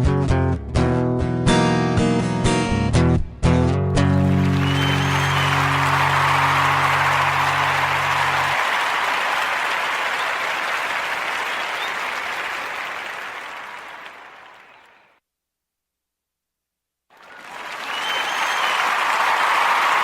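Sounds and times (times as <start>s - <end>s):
applause: 4.0s - 15.2s, 17.1s - 20.0s.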